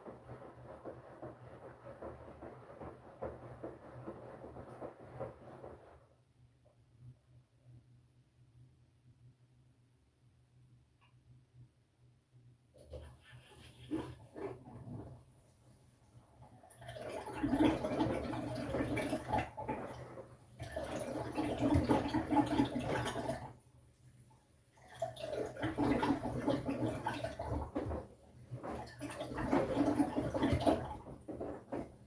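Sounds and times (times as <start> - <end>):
water and laundry sloshing in drum: 0.0 - 6.1, 12.8 - 32.0.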